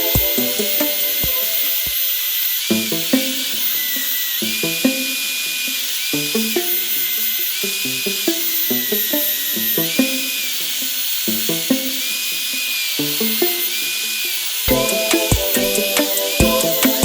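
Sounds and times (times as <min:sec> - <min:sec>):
background music: 0:00.0 - 0:03.7, 0:14.6 - 0:17.0.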